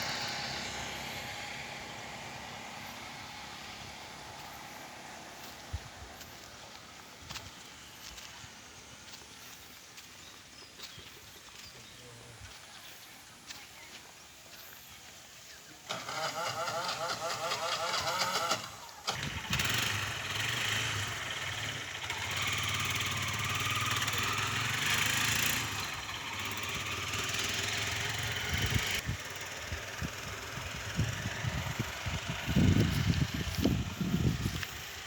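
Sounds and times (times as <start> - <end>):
engine cranking and running: 0.0 - 10.0, 15.8 - 35.0.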